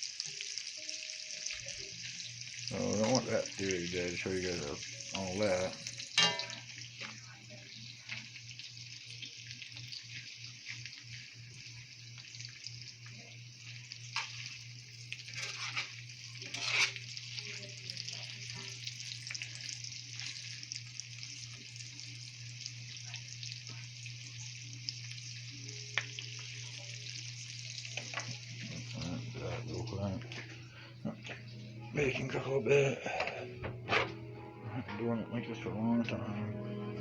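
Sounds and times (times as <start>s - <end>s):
food sizzling in a pan: 0.0s - 34.2s.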